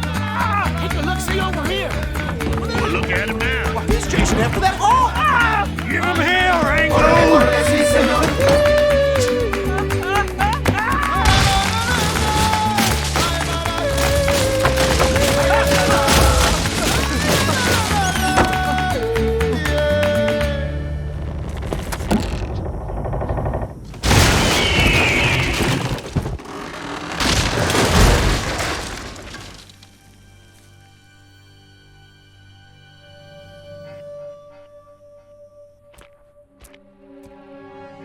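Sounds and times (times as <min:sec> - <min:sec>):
film score music: 0:00.1 - 0:22.4, 0:29.7 - 0:38.0
crashing and booming effects: 0:24.0 - 0:29.7.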